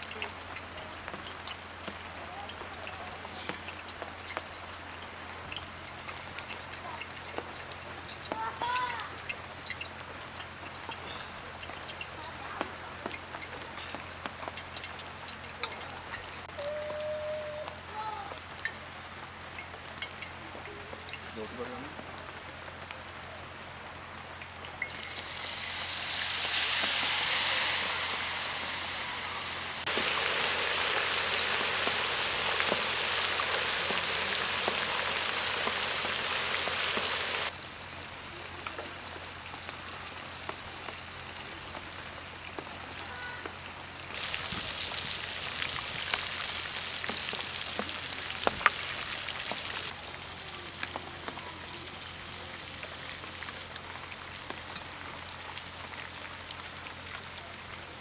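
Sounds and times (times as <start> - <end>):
food sizzling in hot oil: 24.7 - 38.1, 43.5 - 50.1.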